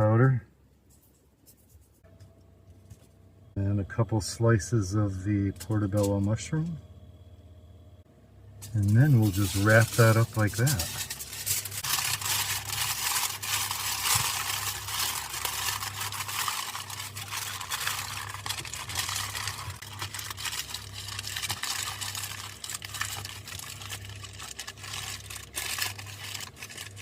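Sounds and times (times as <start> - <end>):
aluminium foil crinkling: 8.6 - 27.0.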